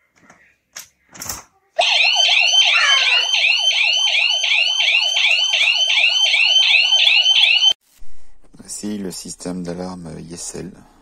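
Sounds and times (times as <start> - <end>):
alarm siren warbling: 1.8 - 7.8.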